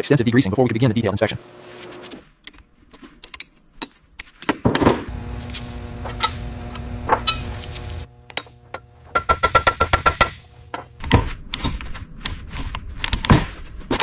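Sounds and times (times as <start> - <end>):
low mechanical hum: 4.8 - 13.9.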